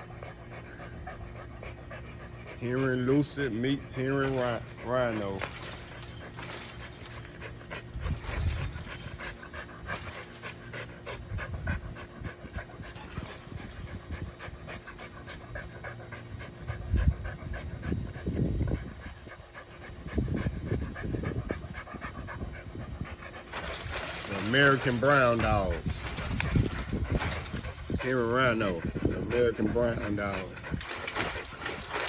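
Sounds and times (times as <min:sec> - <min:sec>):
dog panting: 0:00.0 - 0:32.0.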